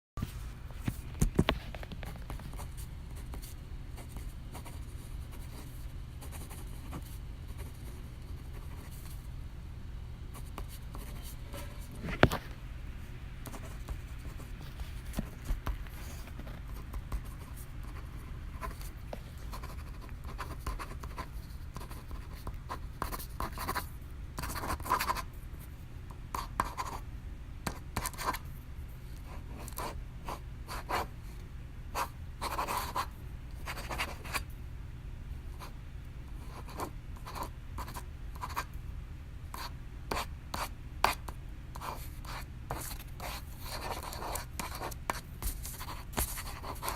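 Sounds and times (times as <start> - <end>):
faint low hum: 0.2 - 46.9
pen scratching on paper: 15.9 - 23.8, 24.4 - 25.2, 32.0 - 34.4, 41.8 - 46.9.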